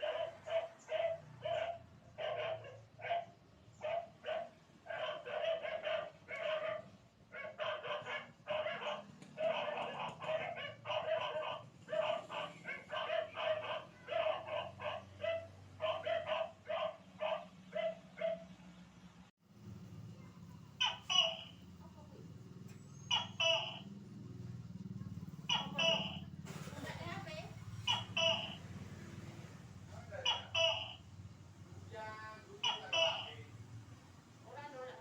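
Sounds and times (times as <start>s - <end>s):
repeated short animal calls: 20.6s - 21.9s, 22.9s - 24.2s, 24.9s - 26.4s, 27.0s - 28.8s, 29.9s - 31.3s, 32.5s - 33.7s.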